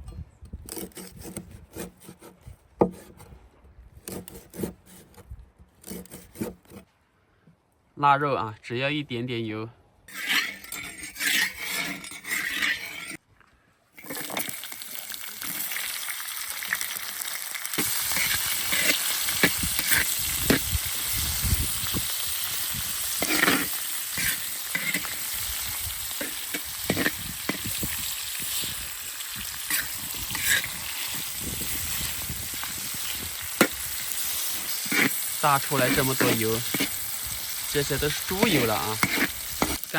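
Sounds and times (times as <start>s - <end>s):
spatula scraping and clicking on pan: 10.1s - 13.2s, 17.8s - 20.6s, 23.1s - 28.7s, 29.4s - 31.2s, 31.9s - 37.0s, 38.2s - 39.9s
pork sizzling in a wok: 14.0s - 39.9s.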